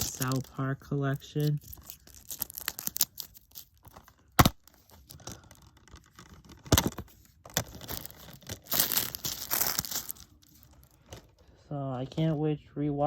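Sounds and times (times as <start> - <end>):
plastic wrapping tearing and crinkling: 0.0 - 11.4.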